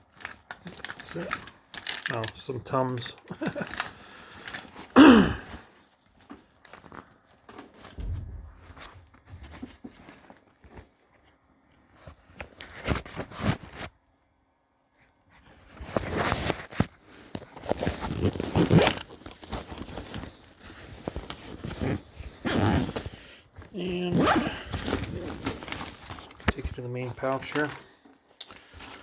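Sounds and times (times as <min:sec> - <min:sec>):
nylon fabric rustling: 0:08.0 - 0:10.3, 0:17.6 - 0:26.6
backpack zippers rasping: 0:17.8 - 0:19.2, 0:21.4 - 0:23.2, 0:24.0 - 0:25.6.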